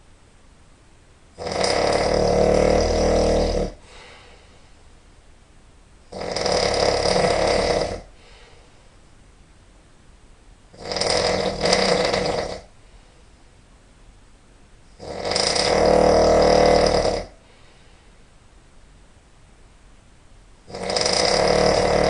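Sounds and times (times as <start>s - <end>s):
person snoring loudly: 1.4s - 4.2s, 6.1s - 8.4s, 10.7s - 12.7s, 15.0s - 17.5s, 20.7s - 22.0s
quiet breathing: 2.8s - 5.1s, 8.0s - 9.1s, 12.6s - 13.6s, 17.2s - 18.5s.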